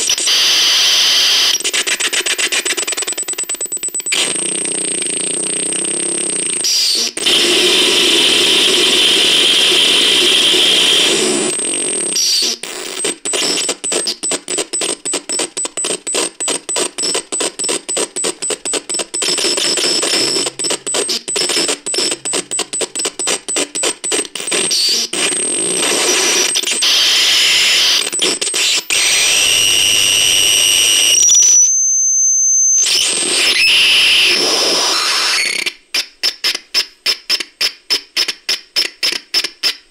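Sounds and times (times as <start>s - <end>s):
electronic static with whining tones: 0.0s - 36.6s.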